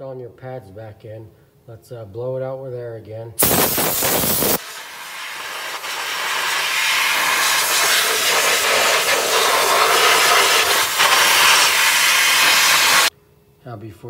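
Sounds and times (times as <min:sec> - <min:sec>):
compressed air hissing: 0:03.4 - 0:13.1.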